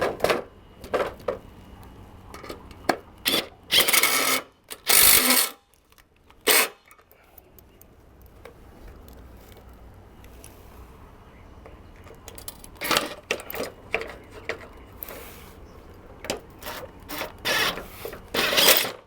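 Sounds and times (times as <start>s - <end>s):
power drill bursts: 3.3s - 5.6s, 6.5s - 6.8s, 16.6s - 19.0s.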